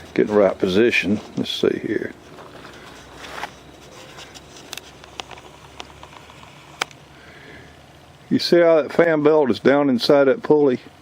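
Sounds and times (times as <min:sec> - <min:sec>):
faint rustling: 0:00.0 - 0:07.0.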